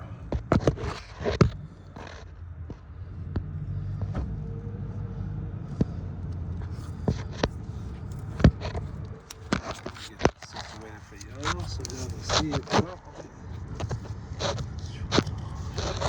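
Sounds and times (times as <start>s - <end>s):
steady low rumble: 0.0s - 16.0s
light clicks and taps: 5.7s - 16.0s.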